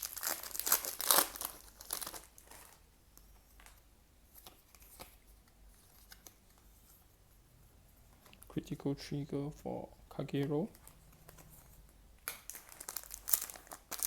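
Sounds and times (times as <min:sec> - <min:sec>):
wrapper crinkling and tearing: 0:00.0 - 0:02.8, 0:12.3 - 0:14.0.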